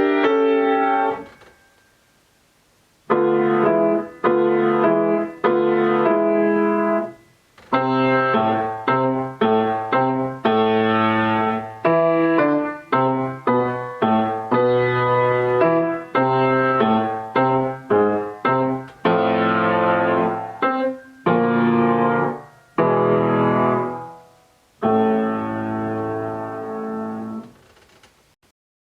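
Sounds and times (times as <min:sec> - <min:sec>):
piano playing slow chords: 0:00.0 - 0:01.8, 0:03.0 - 0:27.4.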